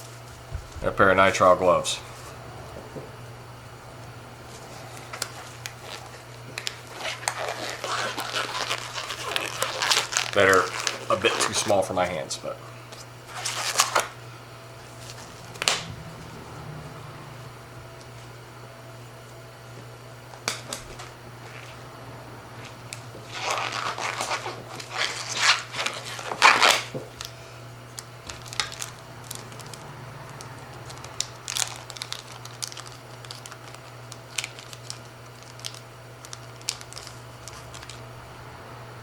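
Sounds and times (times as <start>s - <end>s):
steady low hum: 0.0s - 39.0s
plastic packaging crinkling: 4.5s - 12.2s, 12.9s - 14.2s, 23.2s - 38.2s.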